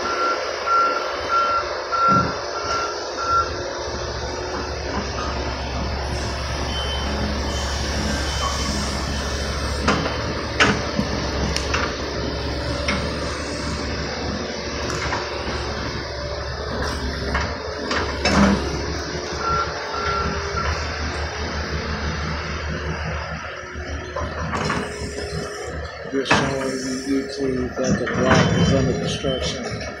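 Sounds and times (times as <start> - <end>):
reversing alarm beeps: 0.0 - 3.6, 6.1 - 10.3, 18.2 - 20.9, 26.7 - 30.0
diesel construction machinery running: 0.0 - 30.0.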